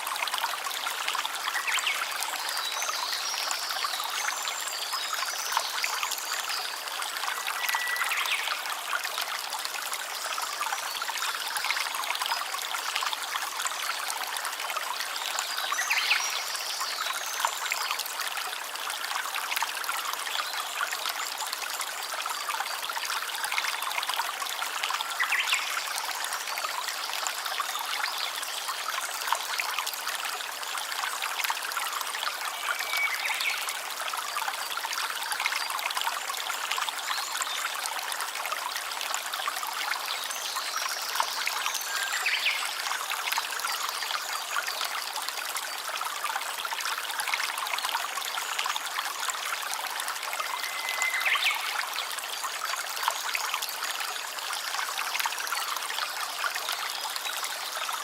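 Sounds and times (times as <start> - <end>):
stream trickling: 0.0 - 58.0.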